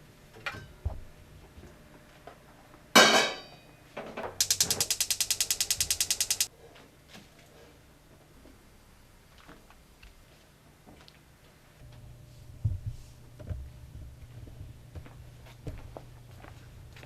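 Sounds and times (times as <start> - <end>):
rapid mechanical ratcheting: 4.4 - 6.5.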